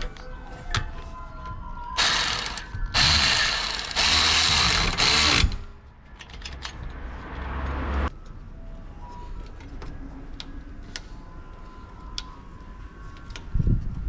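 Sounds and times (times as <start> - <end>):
pneumatic tool bursts: 2.0 - 5.6.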